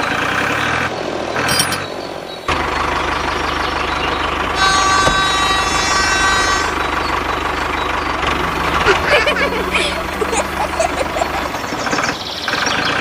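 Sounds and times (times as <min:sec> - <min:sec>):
engine chugging: 0:00.0 - 0:13.0
horn: 0:04.6 - 0:07.1, 0:08.2 - 0:11.7.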